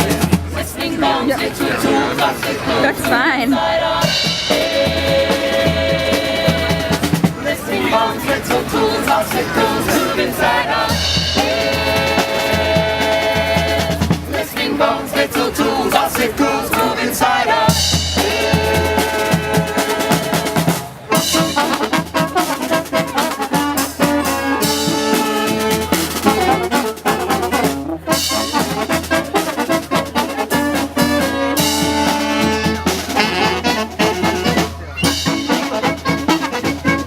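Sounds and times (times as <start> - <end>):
brass band playing: 0.0 - 37.0
drum kit beat: 2.8 - 7.4, 10.9 - 14.4, 17.6 - 37.0.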